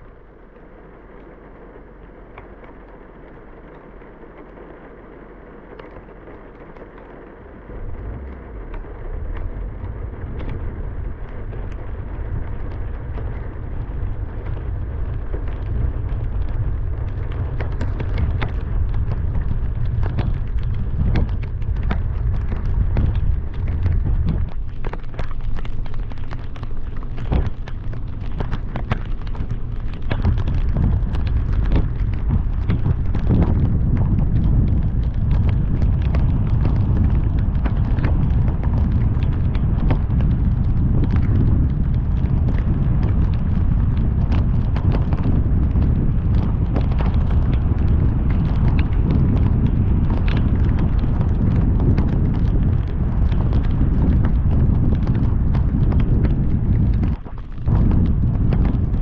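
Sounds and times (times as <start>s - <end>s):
rain ticking on car: 0.0s - 59.0s
wind and road noise: 0.0s - 59.0s.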